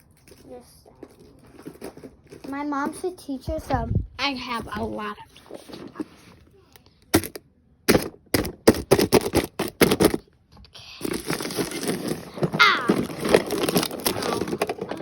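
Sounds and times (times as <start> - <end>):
sticky tape crackling and rasping: 10.8 - 15.0
paper packaging crinkling: 11.0 - 15.0.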